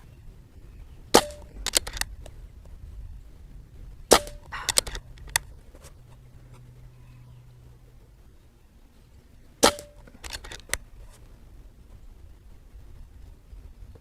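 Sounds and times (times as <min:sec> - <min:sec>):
air rifle shot crack: 0:01.1 - 0:01.9, 0:04.1 - 0:05.0, 0:09.6 - 0:10.1
quiet rifle mechanism clicks: 0:01.2 - 0:02.8, 0:04.4 - 0:05.6, 0:09.7 - 0:10.9.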